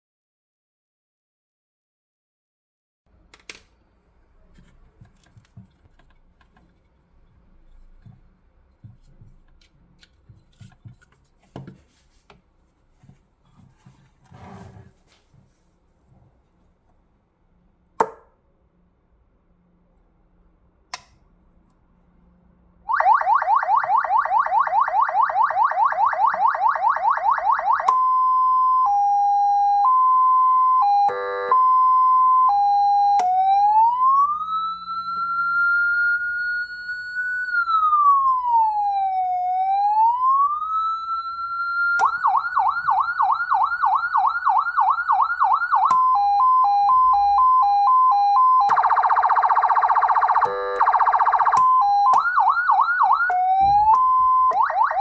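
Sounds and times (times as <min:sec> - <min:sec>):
electronic police siren: 0:22.9 - 0:55.0
buzzy siren horn blast: 0:28.8 - 0:55.0.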